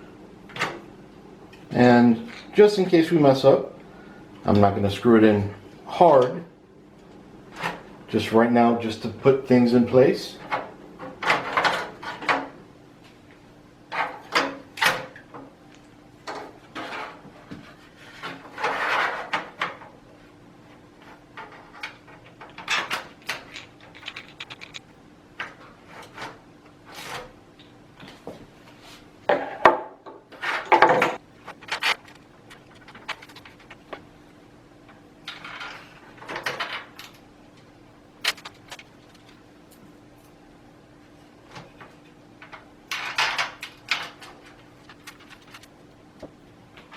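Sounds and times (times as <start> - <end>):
faint steady hum: 0.0 - 46.9
screwdriver clicks and scrapes: 23.6 - 24.8.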